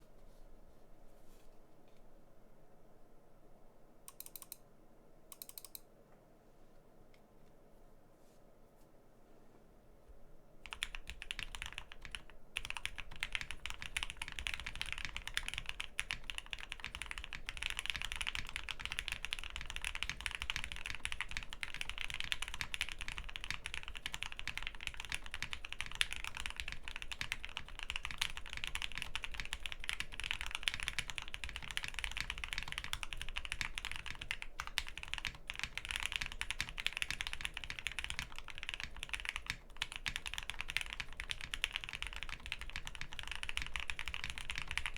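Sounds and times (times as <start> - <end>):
fast typing on mechanical keyboard: 10.6 - 44.9.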